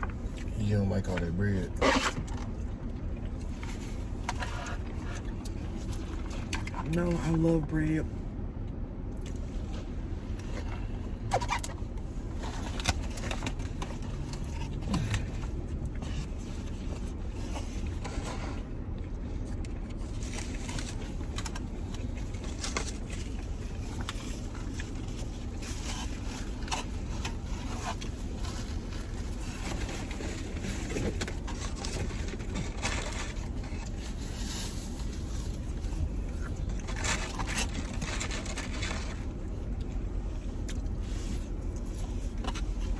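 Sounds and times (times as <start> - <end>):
car interior rumble: 0.0 - 42.9.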